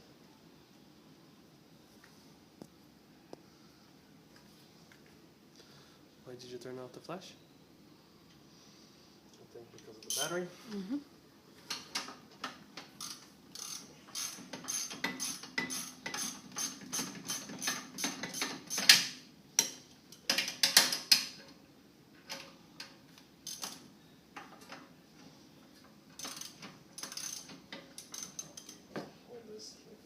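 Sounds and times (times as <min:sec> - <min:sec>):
ratchet wrench clicking: 0:13.0 - 0:18.8, 0:23.4 - 0:23.8, 0:26.2 - 0:28.8.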